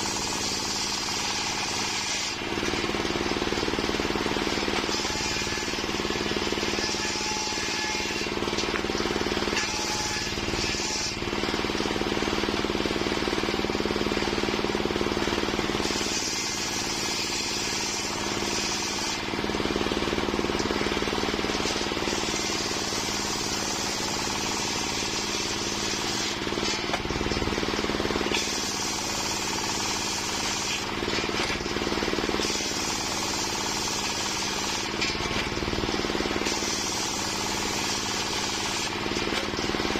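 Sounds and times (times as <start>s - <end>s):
circular sawmill running: 0.0s - 39.9s
saw blade hissing through wood: 28.2s - 31.4s, 36.4s - 39.0s.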